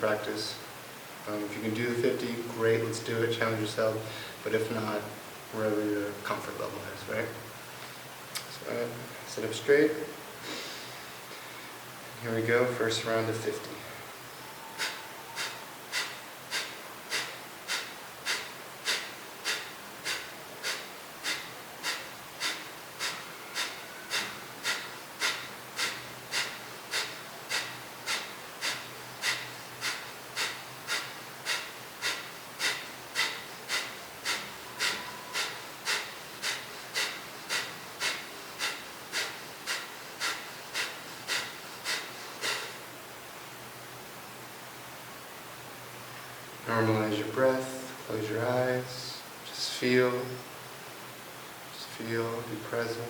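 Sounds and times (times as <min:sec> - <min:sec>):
forceful nasal exhales: 0:10.4 - 0:11.1, 0:14.7 - 0:42.9.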